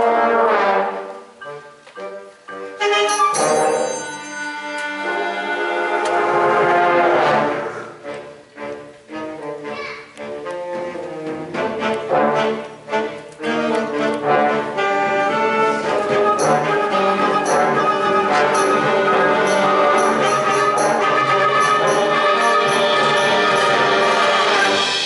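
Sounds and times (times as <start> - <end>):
wind band playing: 0.0 - 25.0
sharp percussion strikes: 3.0 - 4.8, 16.4 - 25.0.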